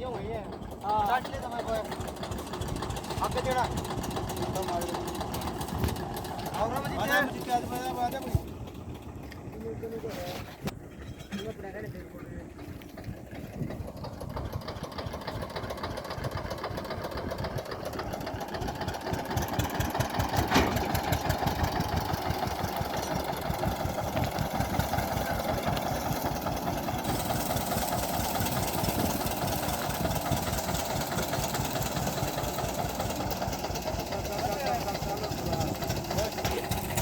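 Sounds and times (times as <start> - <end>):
diesel tractor engine knocking: 0.0 - 10.0, 10.6 - 37.0
hiss: 24.4 - 33.8.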